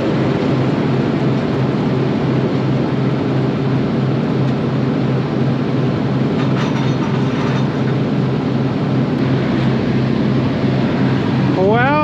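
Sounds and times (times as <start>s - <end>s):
combine harvester engine drone: 0.0s - 12.0s
faint mechanical clatter: 6.3s - 8.1s.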